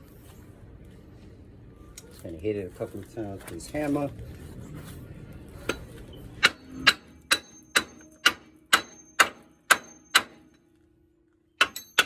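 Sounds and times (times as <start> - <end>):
hammer striking metal: 5.7 - 10.7, 11.6 - 12.0.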